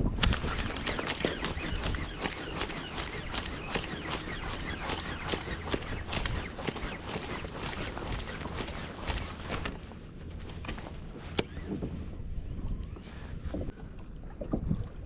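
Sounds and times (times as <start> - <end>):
rhythmic scraping or splashing: 0.0 - 10.0
water noise: 0.0 - 10.0
wind: 0.0 - 15.0.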